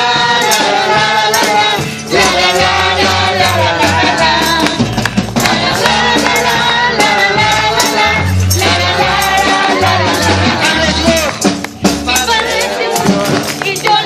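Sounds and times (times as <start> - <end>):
group singing praise music: 0.0 - 14.0
tambourine: 0.0 - 14.0
bass line: 2.1 - 13.5.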